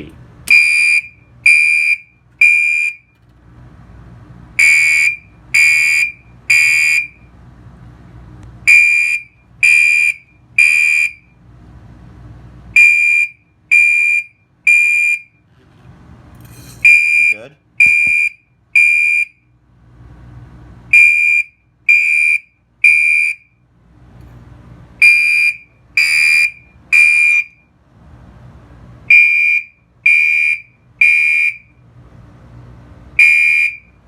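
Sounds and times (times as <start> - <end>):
fire alarm beeping: 0.5 - 3.1, 4.6 - 7.3, 8.7 - 11.3, 12.8 - 15.4, 16.8 - 19.4, 20.9 - 23.5, 25.0 - 27.7, 29.1 - 31.8, 33.2 - 33.9.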